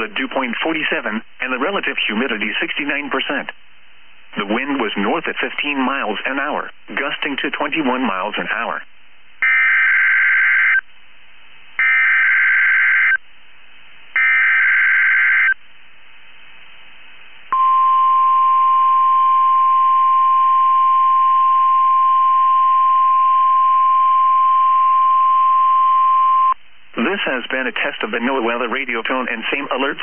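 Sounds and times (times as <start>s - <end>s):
steady weather radio alert tone: 9.4s - 10.8s, 11.8s - 13.2s, 14.2s - 15.6s, 17.6s - 27.4s.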